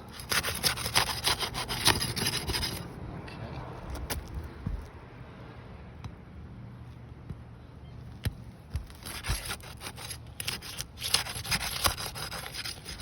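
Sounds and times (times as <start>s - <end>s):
tool scraping roof shingles: 0.0s - 2.8s, 8.8s - 13.0s.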